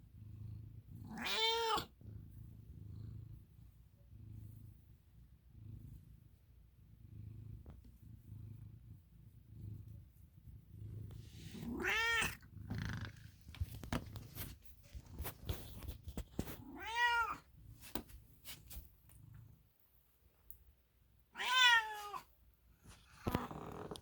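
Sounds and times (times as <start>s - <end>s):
cat purring: 0.0s - 17.8s, 22.7s - 24.0s
cat meowing: 1.1s - 1.9s, 11.6s - 12.4s, 16.6s - 17.4s, 21.3s - 22.3s.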